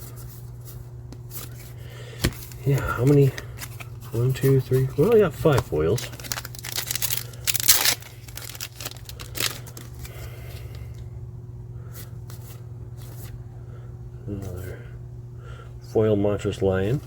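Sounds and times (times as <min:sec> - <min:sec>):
cards rustling: 0:00.7 - 0:11.0
foil wrapper tearing and crinkling: 0:02.2 - 0:10.3.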